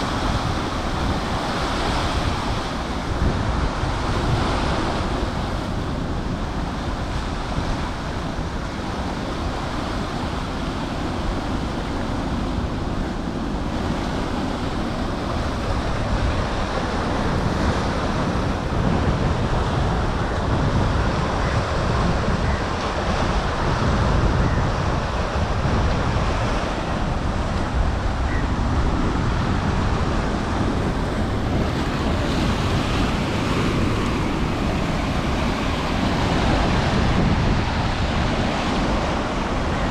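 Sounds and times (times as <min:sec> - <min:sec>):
waves on open water: 0:00.0 - 0:39.9
wind buffeting microphone: 0:00.0 - 0:39.9
wind rushing: 0:15.8 - 0:39.9.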